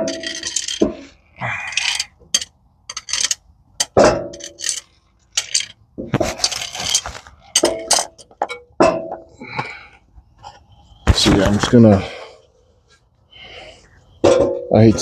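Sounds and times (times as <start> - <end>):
metal tools clinking: 0.0 - 9.2.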